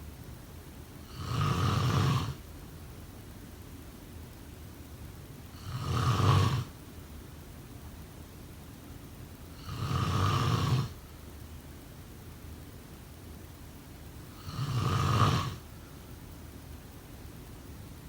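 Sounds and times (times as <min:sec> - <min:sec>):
person snoring: 0:01.1 - 0:02.4, 0:05.6 - 0:06.7, 0:09.6 - 0:11.0, 0:14.4 - 0:15.6.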